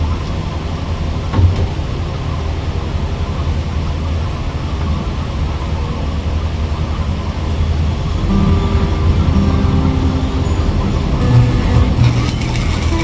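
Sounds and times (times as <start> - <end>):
heavy machinery rumbling: 7.2 - 13.0
faint steady tones: 7.8 - 13.0.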